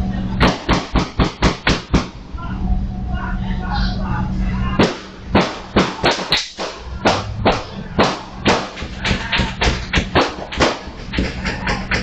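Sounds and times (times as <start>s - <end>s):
steady low bass: 0.0s - 0.5s, 1.2s - 5.8s, 6.5s - 10.2s.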